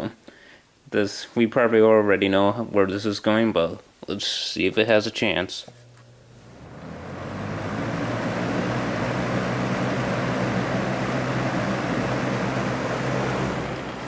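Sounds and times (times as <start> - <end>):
fan motor hum: 5.7 - 14.0
box fan rushing air: 6.0 - 14.0.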